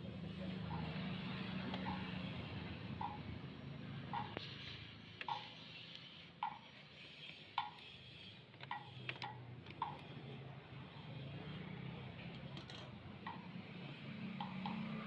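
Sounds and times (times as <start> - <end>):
regular ticking: 5.2 - 5.7.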